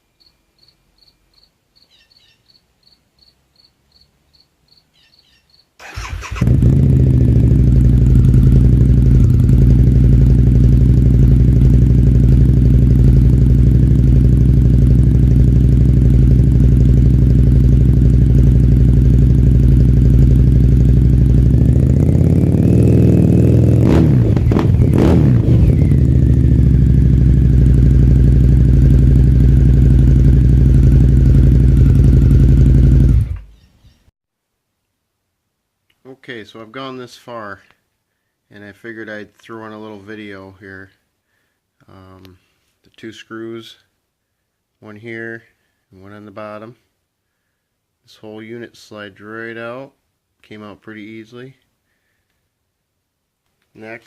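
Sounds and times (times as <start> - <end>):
crickets chirping: 0.1 - 5.7
motorcycle engine idling and revving: 5.8 - 33.6.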